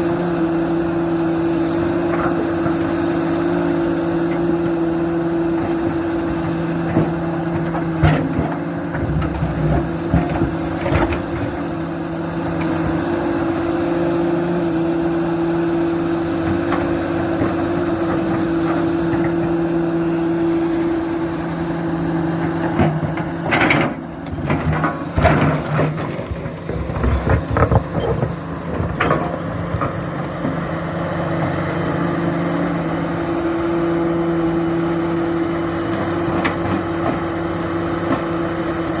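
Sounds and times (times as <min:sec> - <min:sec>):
excavator diesel engine running: 0:00.0 - 0:39.0
bucket clanking and knocking: 0:22.8 - 0:29.4.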